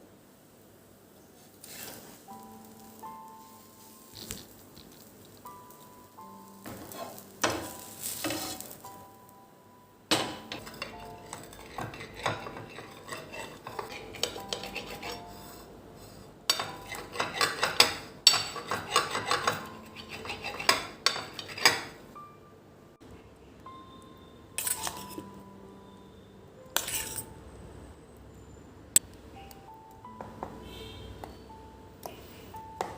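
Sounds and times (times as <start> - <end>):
dishes and cutlery clattering: 10.1 - 15.2, 16.5 - 22.0, 24.6 - 25.3.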